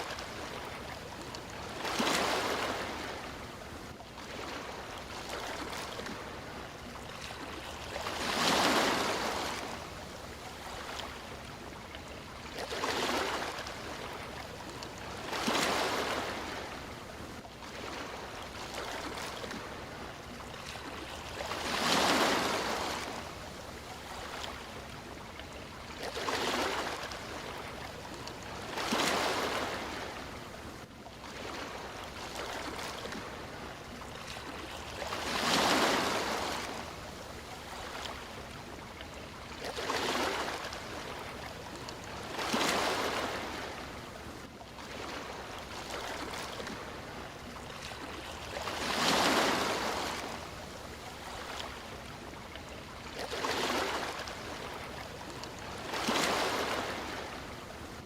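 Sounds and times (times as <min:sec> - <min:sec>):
sea waves breaking: 0:00.0 - 0:58.0
steady wash of water: 0:00.0 - 0:58.0.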